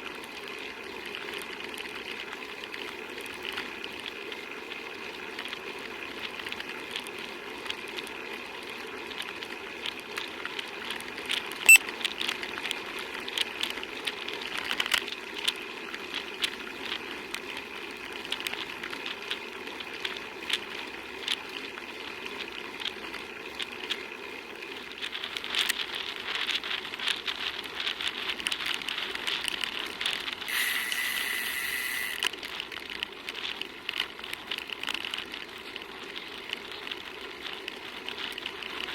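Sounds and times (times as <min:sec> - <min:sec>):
small clicks and rattles: 0:09.1 - 0:38.9
bicycle tyres humming: 0:30.3 - 0:32.5
brief high-pitched hiss: 0:30.5 - 0:32.3.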